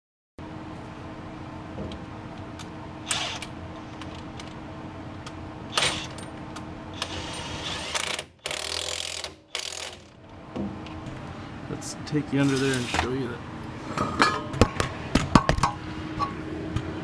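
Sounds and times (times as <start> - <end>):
steady hum: 0.4 - 8.5, 9.3 - 17.0
hand tool clicks and ratcheting: 7.9 - 10.1.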